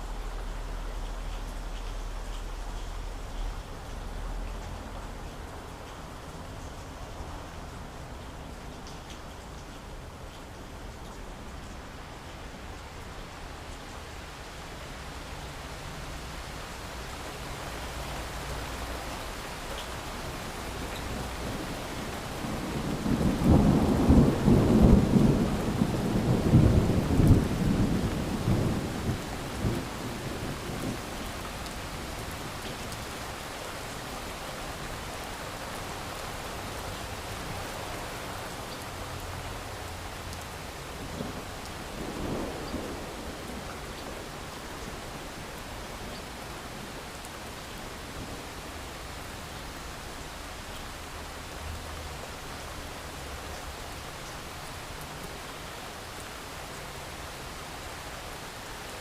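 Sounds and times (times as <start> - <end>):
steady rain: 0.0 - 59.0
thunder rumbling: 21.2 - 31.1, 41.0 - 44.6.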